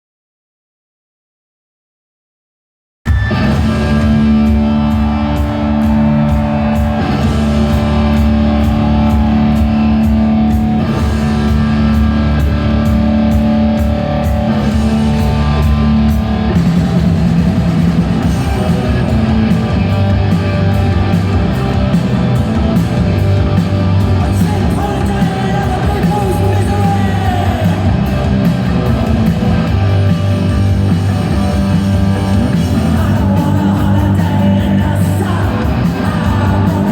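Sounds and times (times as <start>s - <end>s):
live punk rock band: 3.1s - 36.9s
person singing: 24.2s - 28.4s, 32.1s - 36.9s.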